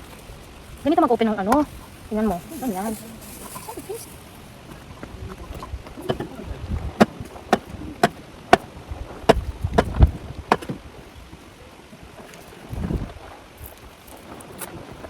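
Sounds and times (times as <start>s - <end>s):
sharp knocks: 7.0s - 8.7s, 9.3s - 10.8s.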